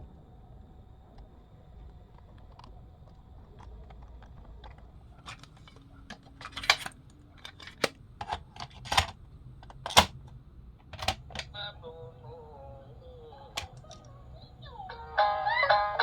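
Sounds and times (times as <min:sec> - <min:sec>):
hard plastic clicks and knocks: 0:02.2 - 0:11.5.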